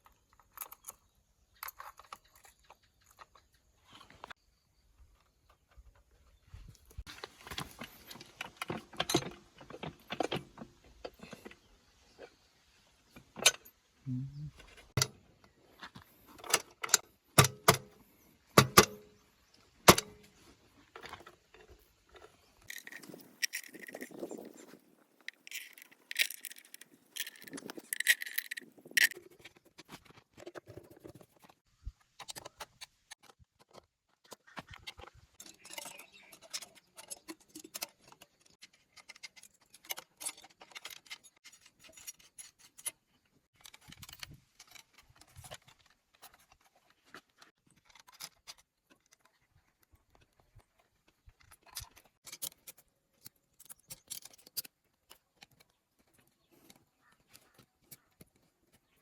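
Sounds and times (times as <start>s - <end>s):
metal tools clinking: 21.0s - 29.3s.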